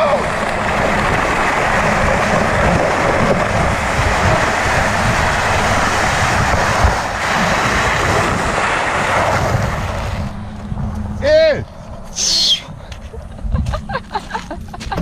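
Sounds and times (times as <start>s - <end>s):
wind buffeting microphone: 0.0s - 11.7s
low rumble: 0.0s - 14.7s.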